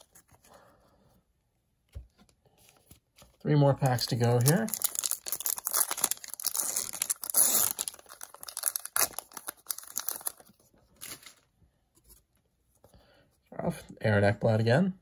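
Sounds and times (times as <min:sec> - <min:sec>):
foil wrapper tearing and crinkling: 0:03.8 - 0:11.3.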